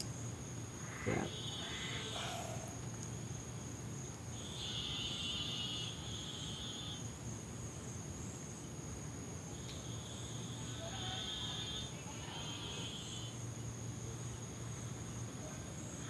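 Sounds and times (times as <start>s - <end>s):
crickets trilling: 0.0s - 16.0s
high-pitched insect drone: 0.8s - 2.8s, 4.3s - 7.1s.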